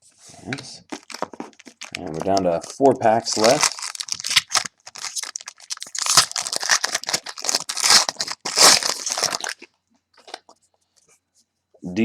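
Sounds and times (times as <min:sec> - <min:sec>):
wrapper tearing and crinkling: 0:00.8 - 0:10.5.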